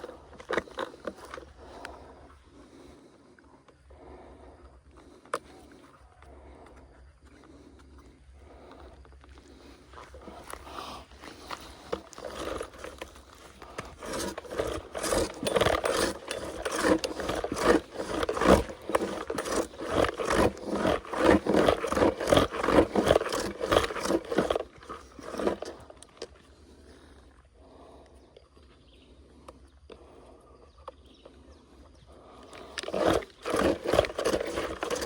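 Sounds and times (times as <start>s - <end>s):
branches crackling and snapping: 11.2s - 25.8s.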